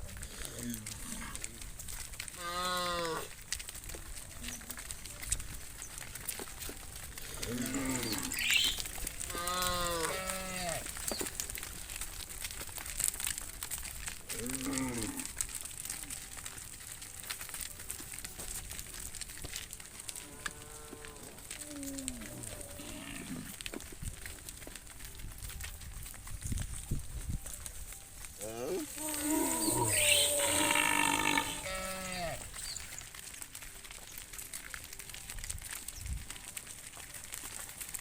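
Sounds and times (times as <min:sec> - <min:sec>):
cattle mooing: 0:07.4 - 0:11.4, 0:28.4 - 0:33.0.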